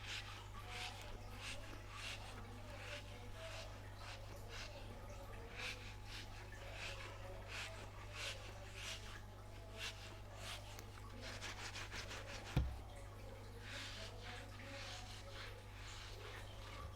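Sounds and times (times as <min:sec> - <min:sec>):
rubbery toy rubbing and scraping: 0:00.0 - 0:12.9.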